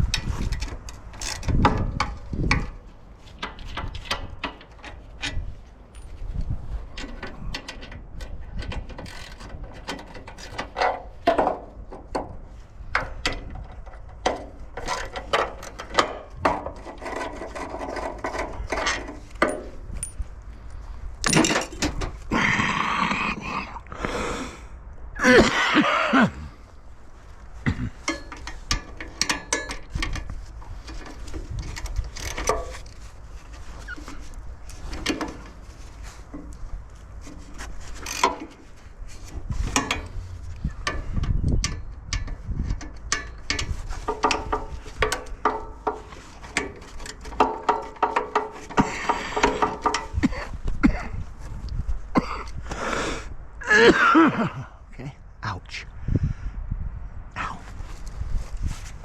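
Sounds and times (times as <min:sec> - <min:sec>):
metal tools clanking: 0:13.0 - 0:20.2, 0:21.2 - 0:22.2, 0:27.7 - 0:35.6, 0:39.2 - 0:51.2.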